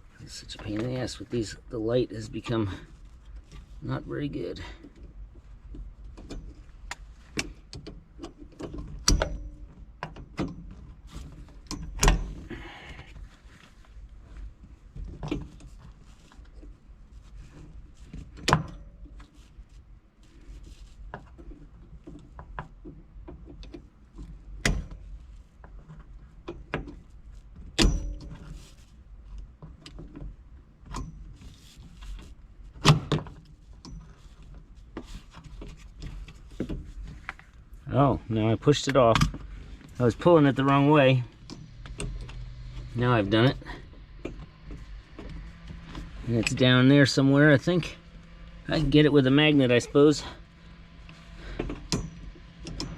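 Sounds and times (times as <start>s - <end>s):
rubbing of handling: 13.1s - 18.4s, 33.4s - 37.8s.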